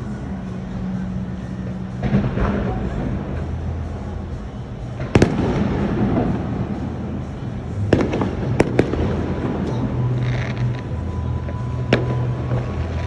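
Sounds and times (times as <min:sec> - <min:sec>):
fireworks crackling and rumbling: 0:00.0 - 0:13.0
fireworks bangs: 0:01.9 - 0:04.0, 0:04.8 - 0:13.0.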